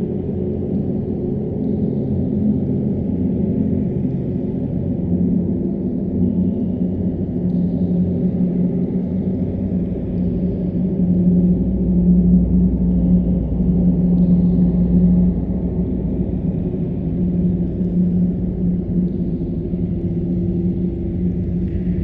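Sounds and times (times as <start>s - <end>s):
low droning rumble: 8.3s - 22.0s.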